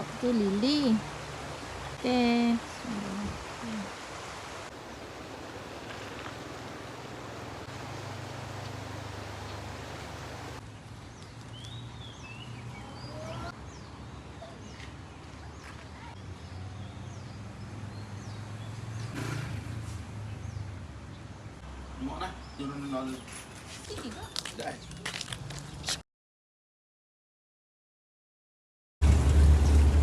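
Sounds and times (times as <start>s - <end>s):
small birds chirping: 8.6s - 26.0s.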